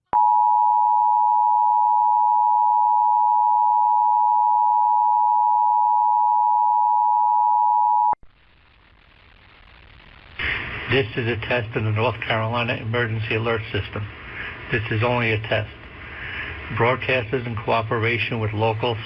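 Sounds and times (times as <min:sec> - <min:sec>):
faint broadcast hiss: 0:08.2 - 0:19.0.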